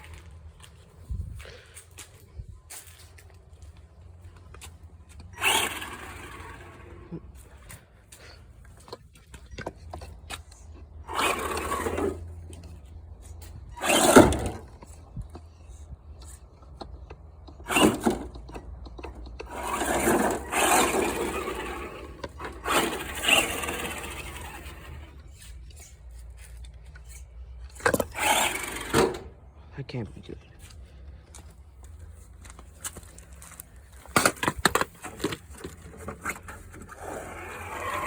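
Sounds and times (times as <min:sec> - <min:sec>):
rc car whirring and scraping: 0:00.0 - 0:00.3, 0:05.1 - 0:07.9, 0:08.8 - 0:15.5, 0:17.5 - 0:29.4, 0:33.1 - 0:38.0.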